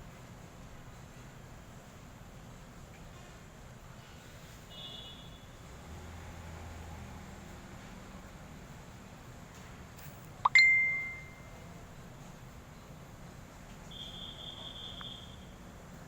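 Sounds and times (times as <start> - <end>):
faint high chirping: 10.4 - 11.6
bright bell ding: 10.5 - 11.5.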